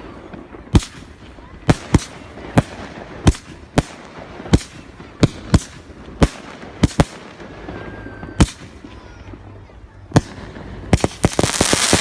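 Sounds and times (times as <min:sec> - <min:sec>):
fireworks bangs: 0:00.0 - 0:12.0
fireworks crackling: 0:00.0 - 0:12.0
firework whistle: 0:07.2 - 0:09.1.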